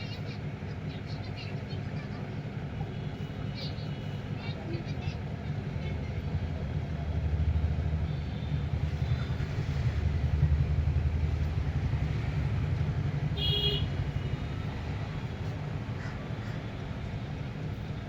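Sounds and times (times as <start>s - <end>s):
street traffic rumbling: 0.0s - 18.0s
vehicle horn toot: 13.4s - 14.4s.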